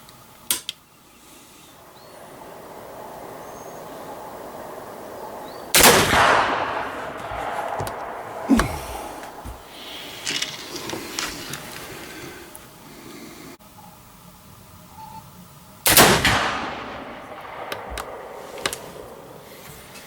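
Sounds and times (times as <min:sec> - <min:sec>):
rifle shot: 0:05.8 - 0:08.6, 0:15.9 - 0:19.4
short sharp knock: 0:07.2 - 0:09.6.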